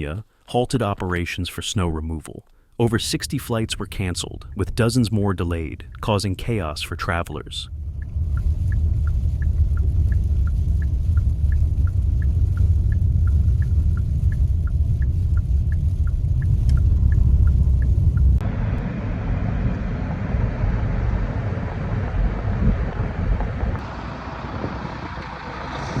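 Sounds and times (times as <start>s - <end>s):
steady ticking: 2.7s - 18.4s
heavy low rumble: 2.8s - 26.0s.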